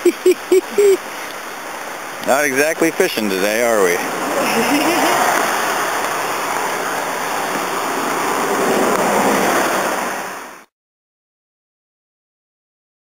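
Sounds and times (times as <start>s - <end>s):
river water rushing: 0.0s - 10.7s.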